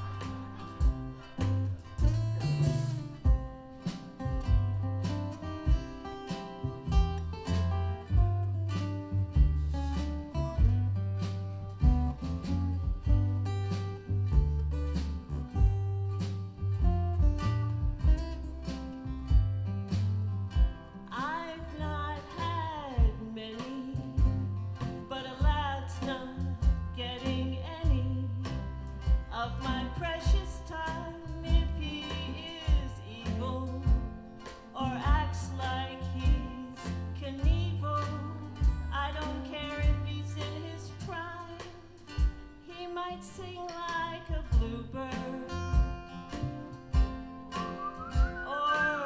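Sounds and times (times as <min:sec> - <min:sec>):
kick-drum beat: 0:00.0 - 0:21.0, 0:23.0 - 0:23.4, 0:24.2 - 0:25.8, 0:26.6 - 0:27.0, 0:27.9 - 0:28.3, 0:29.0 - 0:29.4, 0:30.3 - 0:30.7, 0:32.7 - 0:33.1, 0:33.9 - 0:34.4, 0:37.4 - 0:37.8, 0:38.6 - 0:39.0, 0:42.2 - 0:42.6, 0:44.3 - 0:44.9, 0:45.6 - 0:48.6
bass: 0:00.0 - 0:49.0
sliding lead guitar line: 0:00.0 - 0:49.0.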